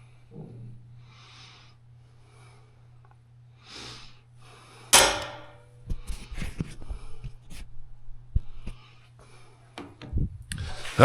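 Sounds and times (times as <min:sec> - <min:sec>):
loud metallic clank: 0:05.0 - 0:05.6
metal tools knocking and rattling: 0:05.0 - 0:05.6.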